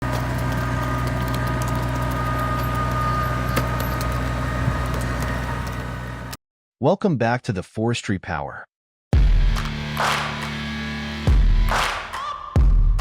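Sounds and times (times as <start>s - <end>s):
engine running steadily: 0.0s - 6.4s.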